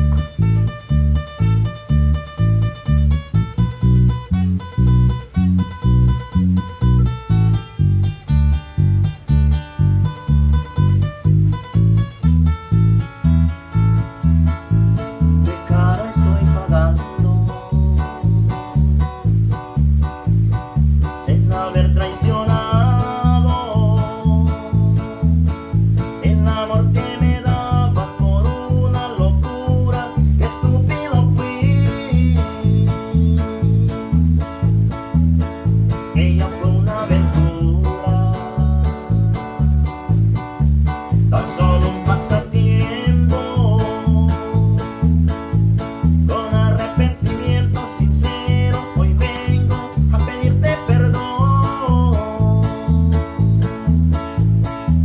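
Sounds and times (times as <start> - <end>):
guitar-led band music: 0.0 - 55.0.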